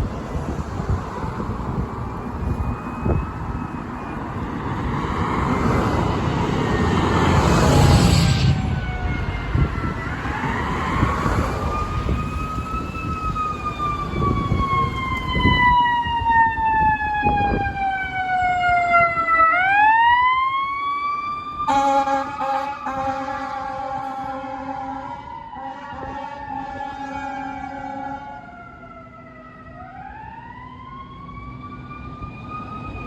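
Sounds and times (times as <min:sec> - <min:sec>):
fire engine siren wailing: 0:00.0 - 0:33.0
air horn blast: 0:21.7 - 0:28.4.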